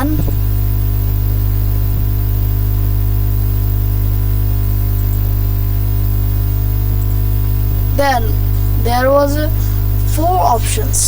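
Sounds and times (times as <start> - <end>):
low mains hum: 0.0 - 11.0
static hiss: 0.0 - 11.0.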